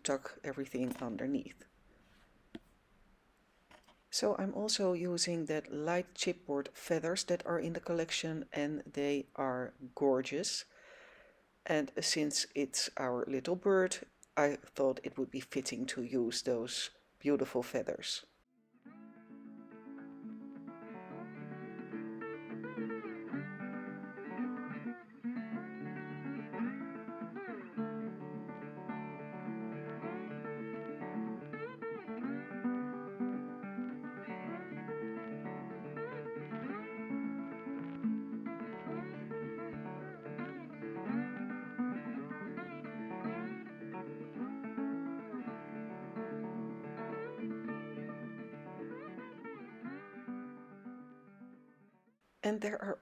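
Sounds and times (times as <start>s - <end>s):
plucked guitar melody: 18.9s - 52.0s.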